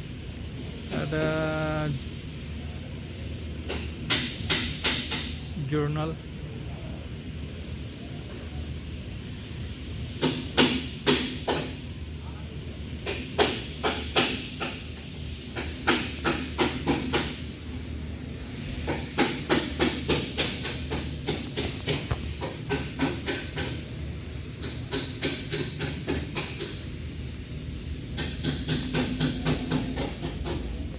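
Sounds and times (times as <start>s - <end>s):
steady low hum: 0.0s - 3.8s, 5.4s - 10.0s
sharp metallic knocks and clicks: 3.6s - 5.4s, 10.2s - 11.8s, 13.0s - 14.8s, 15.6s - 17.4s, 18.9s - 23.8s, 24.6s - 26.8s, 28.2s - 30.7s.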